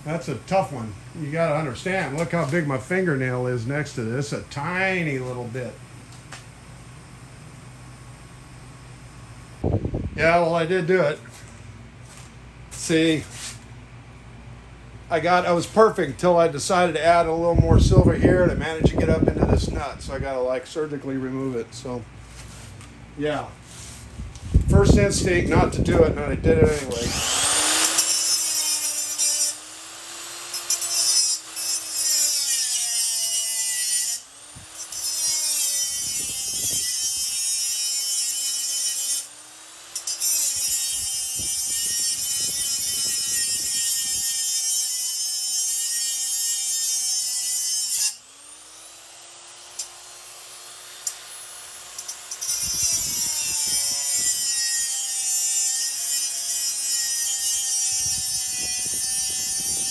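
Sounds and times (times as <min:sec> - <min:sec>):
rotary tool grinding metal: 0:26.7 - 0:59.9.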